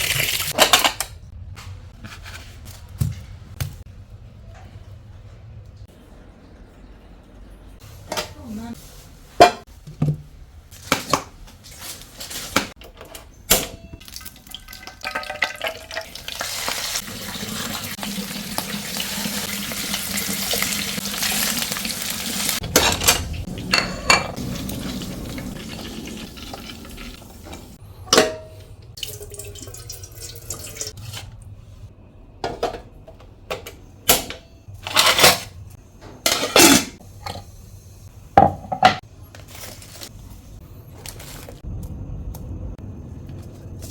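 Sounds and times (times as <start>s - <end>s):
water running from a tap: 0.0s - 0.6s, 14.0s - 22.6s, 24.4s - 27.8s, 29.0s - 31.0s
dishes and pots clattering: 9.4s - 10.2s, 22.6s - 25.1s, 25.7s - 28.6s, 36.1s - 37.5s, 38.4s - 39.0s.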